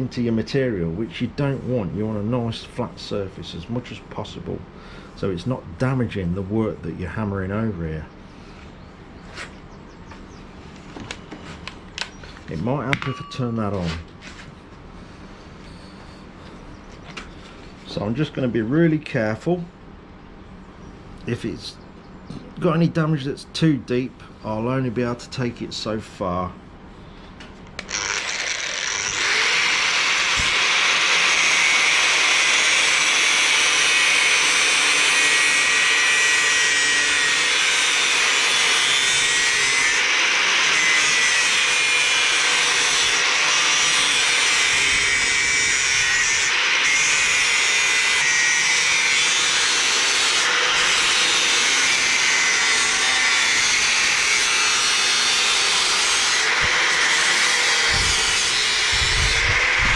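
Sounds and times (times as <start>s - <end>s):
angle grinder grinding steel: 27.8s - 59.9s.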